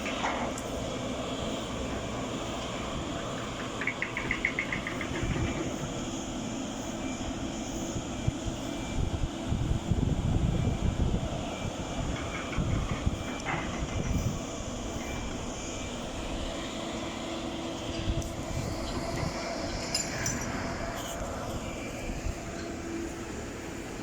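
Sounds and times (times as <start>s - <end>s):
heavy machinery rumbling: 0.0s - 24.0s
rattle of clicks: 3.4s - 5.8s.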